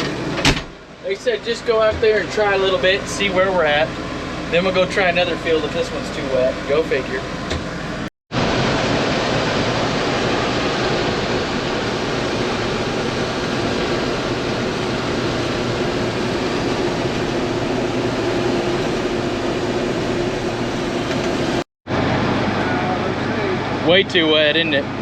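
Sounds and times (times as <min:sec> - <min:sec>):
combine harvester running: 0:00.0 - 0:25.0.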